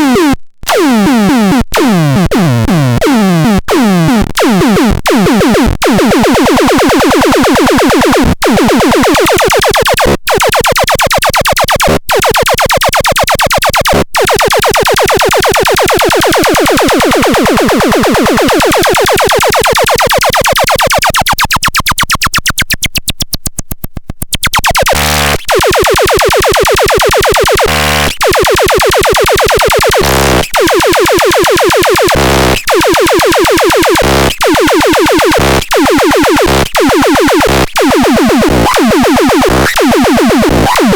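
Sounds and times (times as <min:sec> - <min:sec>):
buzzing synth tone pulsing: 0:24.3 - 0:28.7.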